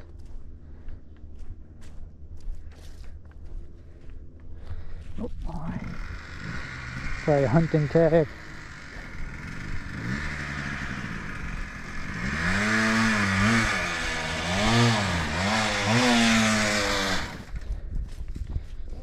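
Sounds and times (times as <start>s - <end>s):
engine revving under load: 5.6s - 17.7s.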